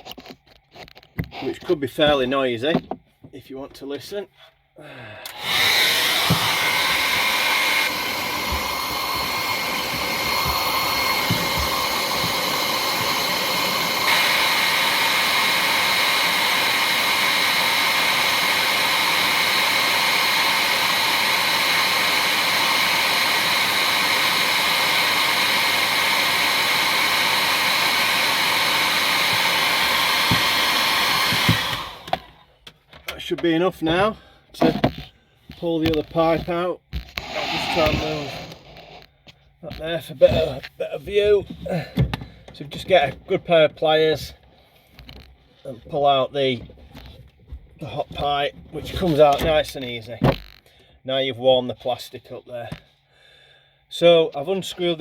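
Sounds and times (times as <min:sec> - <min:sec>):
hairdryer blowing: 0:05.3 - 0:32.5, 0:37.1 - 0:39.0.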